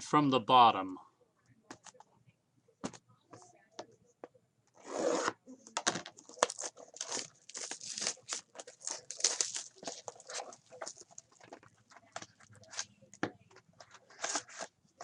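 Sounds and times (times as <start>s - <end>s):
wrapper tearing: 6.2s - 11.2s
wrapper crinkling: 6.2s - 11.7s.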